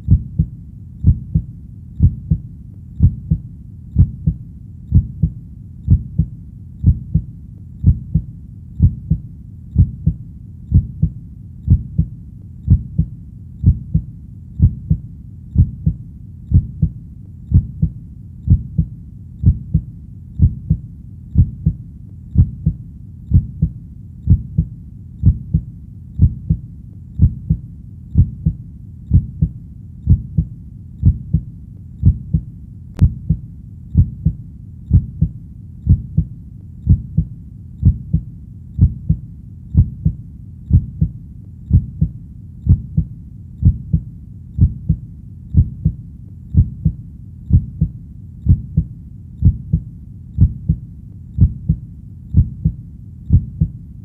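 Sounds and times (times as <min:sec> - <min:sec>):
heartbeat thumps: 0:00.0 - 0:53.8.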